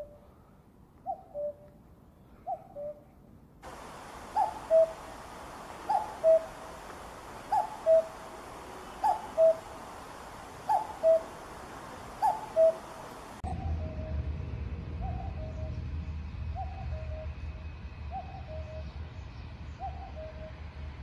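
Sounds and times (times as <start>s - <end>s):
cuckoo calling: 1.0s - 1.7s, 3.7s - 13.8s
background hiss: 3.6s - 13.4s.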